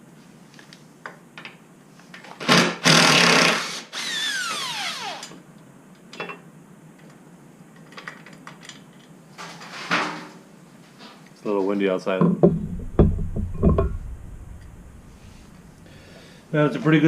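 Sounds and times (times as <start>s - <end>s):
power drill whining: 2.8s - 5.3s.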